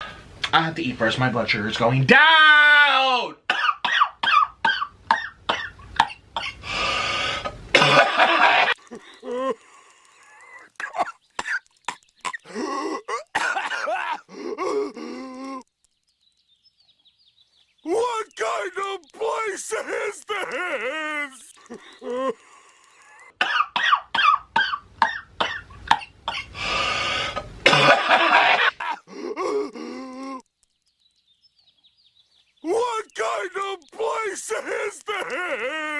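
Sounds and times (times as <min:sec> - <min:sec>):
person coughing: 0:03.5 - 0:06.6, 0:07.8 - 0:09.6, 0:12.3 - 0:15.6, 0:23.2 - 0:26.5, 0:27.6 - 0:30.4
rasping breath: 0:06.6 - 0:07.6, 0:08.8 - 0:10.8, 0:21.3 - 0:23.4, 0:26.4 - 0:27.5
man groaning: 0:14.4 - 0:15.6, 0:17.9 - 0:22.4, 0:29.1 - 0:30.5, 0:32.6 - 0:35.9.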